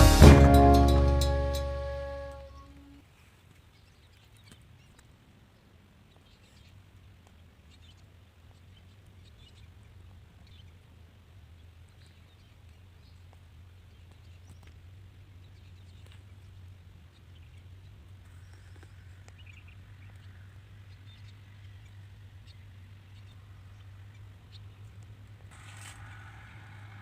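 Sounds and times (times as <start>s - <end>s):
short high chirps: 0.0s - 3.0s.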